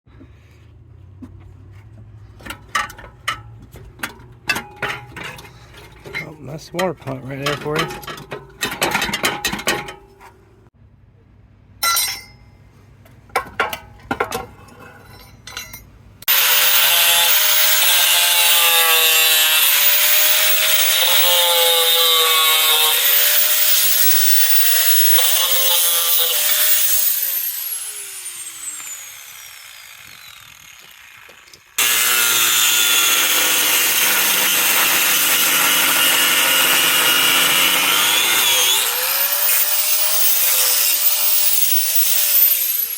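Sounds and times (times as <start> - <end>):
metal tools clinking: 2.4 - 10.3, 11.8 - 12.5, 14.3 - 16.0
power tool whining: 16.2 - 42.9.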